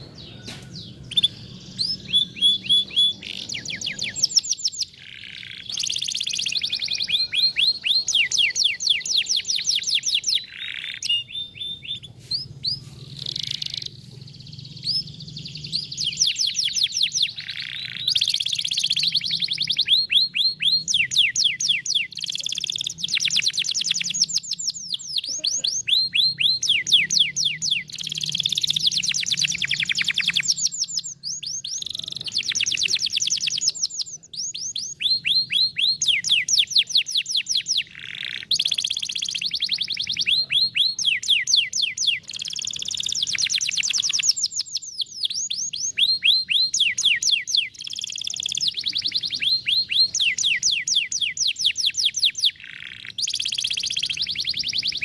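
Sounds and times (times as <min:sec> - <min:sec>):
faint low hum: 0:00.0 - 0:37.1
canary singing: 0:00.0 - 0:55.0.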